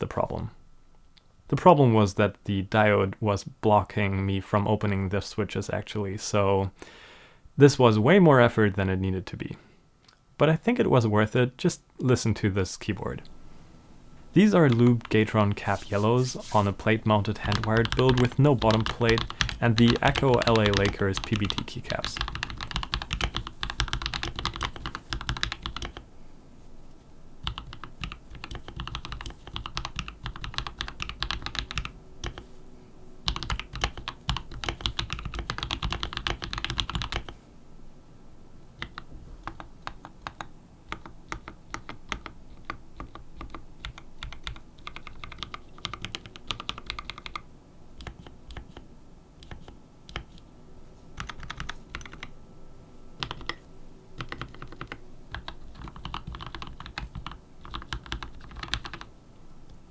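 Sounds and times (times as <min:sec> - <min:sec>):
mechanical keyboard typing: 0:14.7 - 0:26.0, 0:27.4 - 0:32.5, 0:33.3 - 0:37.4, 0:38.8 - 0:48.8, 0:49.4 - 0:50.4, 0:51.2 - 0:52.3, 0:53.2 - 0:53.6, 0:54.2 - 0:59.1.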